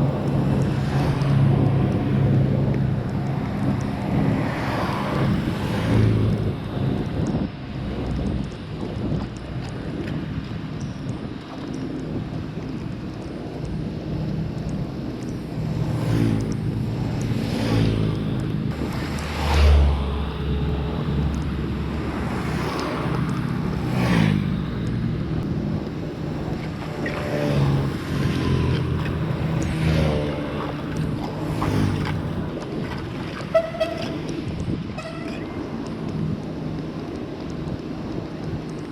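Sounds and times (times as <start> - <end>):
vehicles passing: 0.0 - 38.9
car horn beep: 33.5 - 34.2, 35.0 - 35.4.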